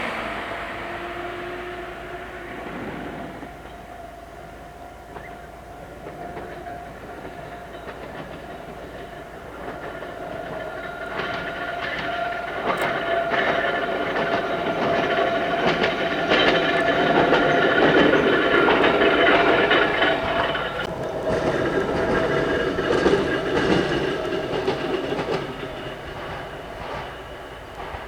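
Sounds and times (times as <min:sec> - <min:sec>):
steady whine: 0:00.0 - 0:07.2
electric train running: 0:00.0 - 0:28.0
wheels clicking over rail joints: 0:00.0 - 0:28.0.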